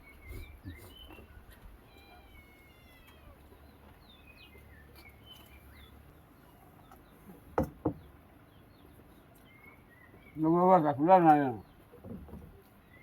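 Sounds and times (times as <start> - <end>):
small birds chirping: 0.0 - 13.0
sharp knocks: 7.5 - 8.1.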